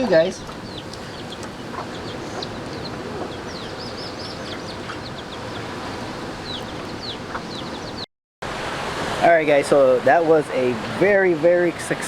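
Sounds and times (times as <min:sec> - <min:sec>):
birds chirping: 0:00.0 - 0:08.1
chickens clucking: 0:00.0 - 0:08.1
steady outdoor hiss: 0:00.0 - 0:12.0.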